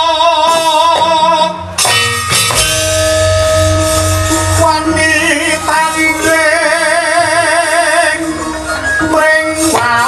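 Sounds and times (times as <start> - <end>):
person singing with vibrato: 0.0 - 1.8, 3.2 - 10.0
struck bronze instruments ringing: 1.8 - 7.6
pulsing low drum: 2.0 - 8.2.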